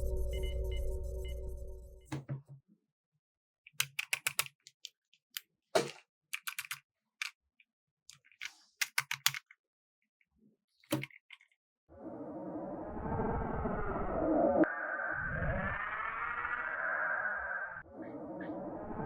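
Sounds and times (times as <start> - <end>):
plastic toy pieces clicking: 3.7 - 5.5, 6.4 - 7.4.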